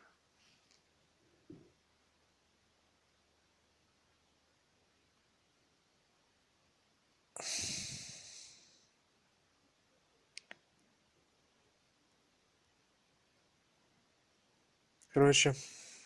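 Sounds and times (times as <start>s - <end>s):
man sighing into microphone: 7.4s - 8.6s
small clicks: 10.3s - 10.8s.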